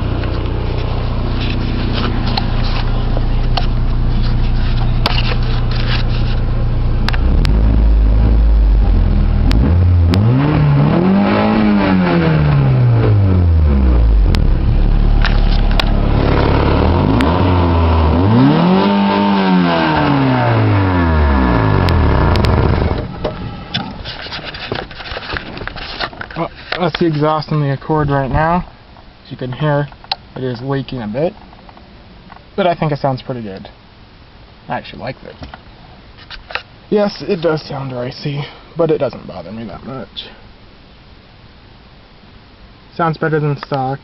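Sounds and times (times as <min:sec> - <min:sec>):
car engine idling and revving: 0:00.0 - 0:25.2.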